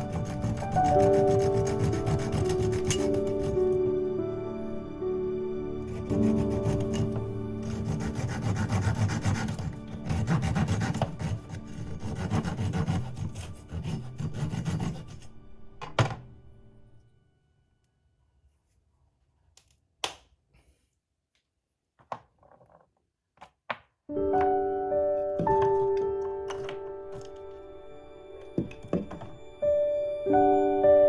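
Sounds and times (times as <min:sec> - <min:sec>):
hand saw rasping through wood: 0:00.0 - 0:03.9, 0:05.9 - 0:15.3
soft background music: 0:00.0 - 0:18.8, 0:24.1 - 0:31.0.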